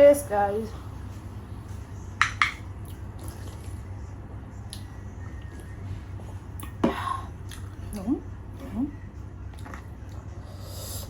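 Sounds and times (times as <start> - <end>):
steady low hum: 0.0 - 11.0
wet mouth drinking sounds: 2.8 - 3.9.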